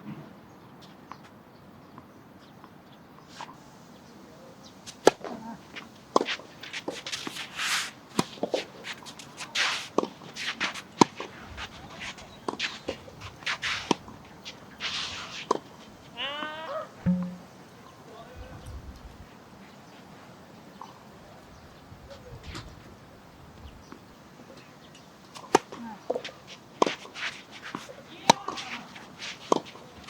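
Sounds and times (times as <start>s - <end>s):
racket hitting tennis ball: 17.1s - 17.6s.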